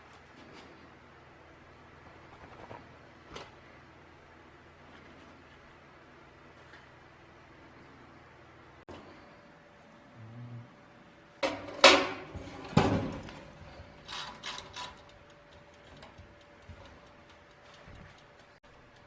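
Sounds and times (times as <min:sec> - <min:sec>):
faint steady hum: 0:00.0 - 0:19.0
sharp knocks and scrapes: 0:11.4 - 0:15.1.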